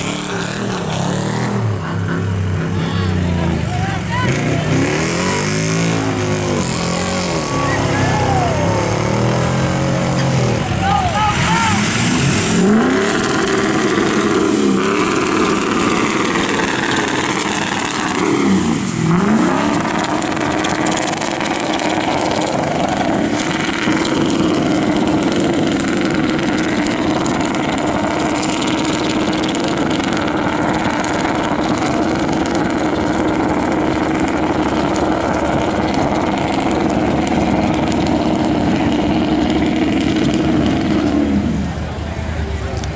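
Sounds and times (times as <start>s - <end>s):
pickup truck engine revving: 0.0s - 42.9s.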